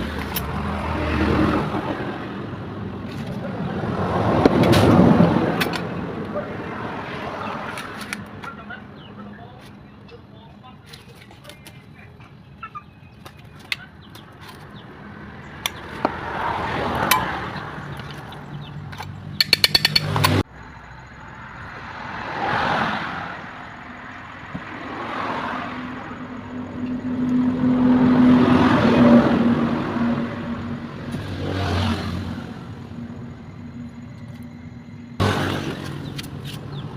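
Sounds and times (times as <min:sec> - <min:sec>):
quick run of clicks: 0:18.9 - 0:20.4.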